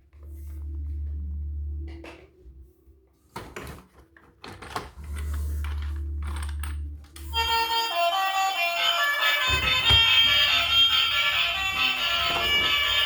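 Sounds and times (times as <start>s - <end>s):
low hum: 0.0s - 3.1s
plastic toys and packaging handled: 3.3s - 7.4s
music track: 5.1s - 13.0s.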